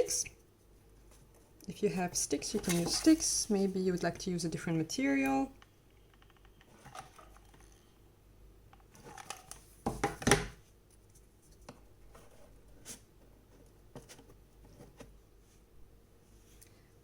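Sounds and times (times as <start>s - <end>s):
knocks and scraping: 2.0s - 3.4s.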